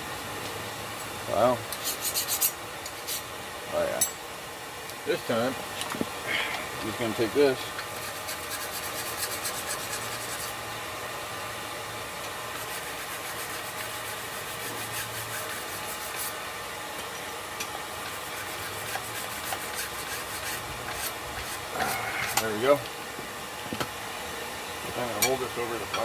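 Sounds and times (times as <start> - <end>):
rubbing strokes on steel blade: 1.7 - 3.3, 7.9 - 10.6, 12.5 - 16.5, 18.0 - 22.6.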